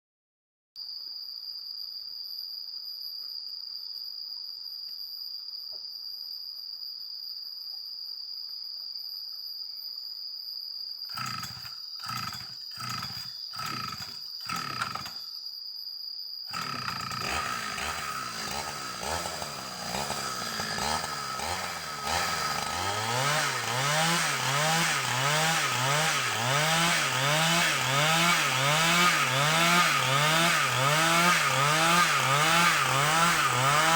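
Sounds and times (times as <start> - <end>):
chainsaw cutting timber: 11.1 - 15.2, 16.5 - 33.9.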